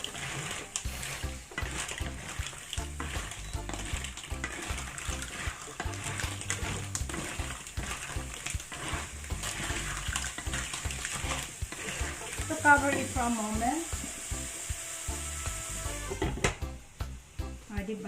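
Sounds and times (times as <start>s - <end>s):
clams sizzling in a hot pan: 0.0s - 18.0s
utensil clicking against pan: 1.5s - 13.1s.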